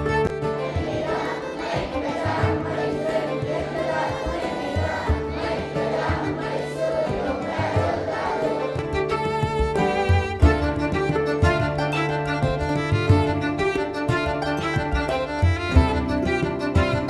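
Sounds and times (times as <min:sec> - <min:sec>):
sustained accompaniment: 0:00.0 - 0:17.0
group of voices singing: 0:00.6 - 0:08.8.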